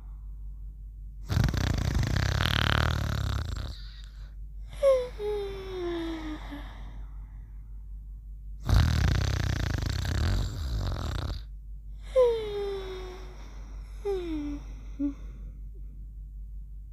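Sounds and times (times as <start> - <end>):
exaggerated snoring: 1.2 - 4.3, 8.6 - 11.5.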